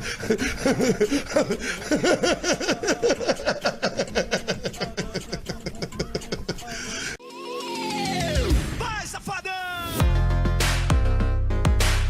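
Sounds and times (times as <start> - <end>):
person laughing: 0.0 - 7.2.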